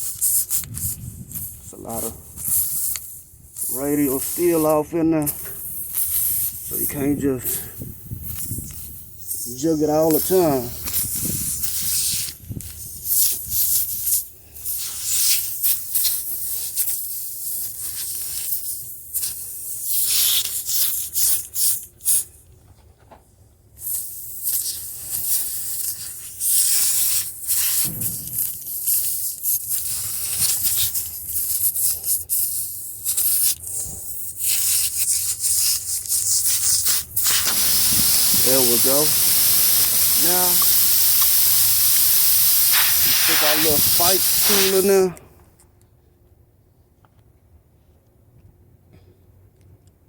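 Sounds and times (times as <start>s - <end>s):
reamer tool scraping: 0.0s - 7.6s, 8.3s - 12.3s, 25.8s - 45.1s
air hissing from tire: 0.0s - 22.3s, 23.8s - 45.1s.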